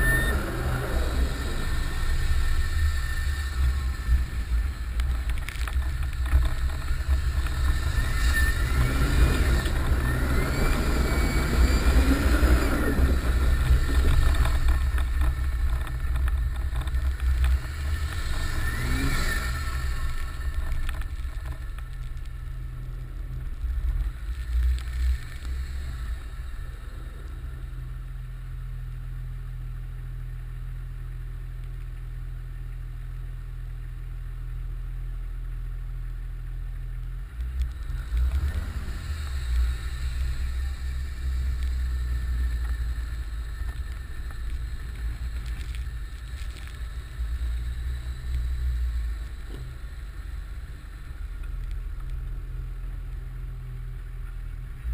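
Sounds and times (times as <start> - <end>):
faint turbo whistle: 0.0 - 5.1, 7.6 - 14.4.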